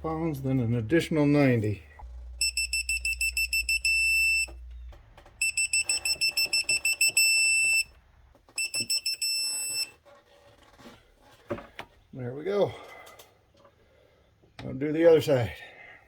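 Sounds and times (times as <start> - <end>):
torque wrench beeping: 2.4 - 4.6, 5.4 - 7.9, 8.6 - 9.9.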